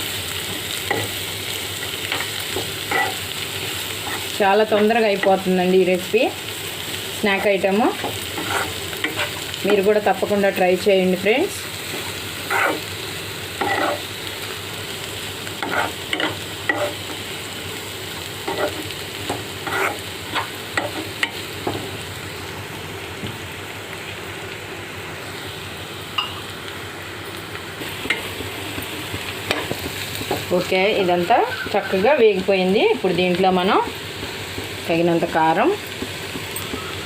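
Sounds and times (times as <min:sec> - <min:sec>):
vegetables sizzling in oil: 0:00.0 - 0:37.0
stirring scrapes against pan: 0:08.0 - 0:09.4, 0:11.9 - 0:12.9, 0:13.6 - 0:14.0, 0:15.6 - 0:17.0, 0:19.6 - 0:21.1.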